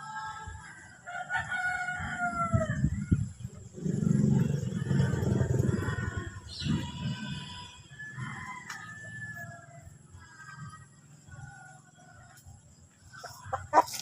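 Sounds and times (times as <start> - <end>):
rooster crowing: 0.9 - 3.3, 4.8 - 10.5.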